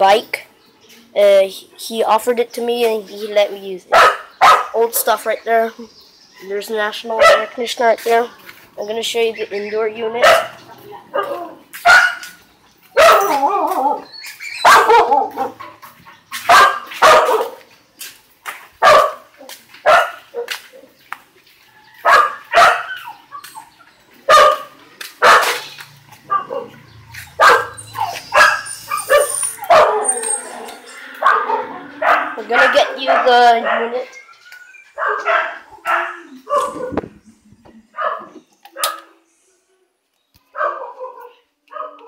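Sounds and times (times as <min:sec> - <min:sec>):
dogs barking: 0:03.9 - 0:04.8, 0:07.1 - 0:07.7, 0:10.0 - 0:17.7, 0:18.8 - 0:21.0, 0:22.0 - 0:37.2, 0:37.9 - 0:39.1, 0:40.5 - 0:42.0.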